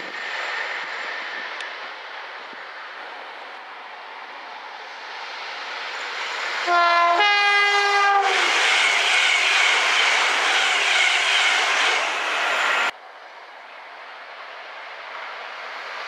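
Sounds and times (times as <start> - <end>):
train passing at speed: 0.0 - 16.0
two-tone train horn: 6.7 - 12.2.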